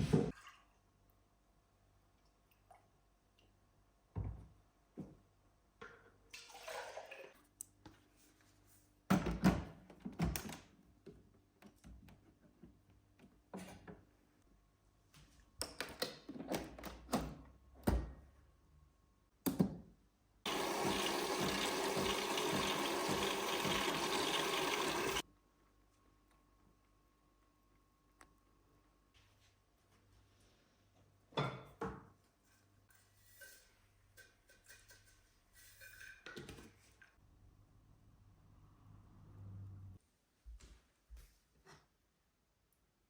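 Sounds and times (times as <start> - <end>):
water tap running: 20.5 - 25.2.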